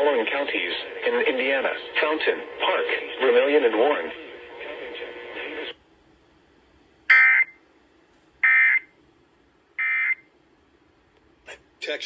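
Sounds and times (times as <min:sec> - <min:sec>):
warbling data tones: 0:07.1 - 0:07.6.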